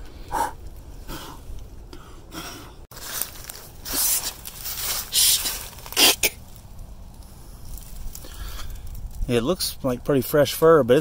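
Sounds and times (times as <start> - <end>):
scraping and rustling in dirt: 2.9 - 10.0.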